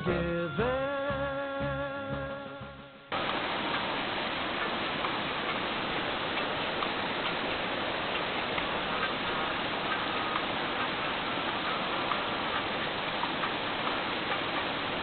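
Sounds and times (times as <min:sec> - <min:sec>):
song with guitar: 0:00.0 - 0:03.1
steady hiss with faint ticks: 0:00.0 - 0:15.0.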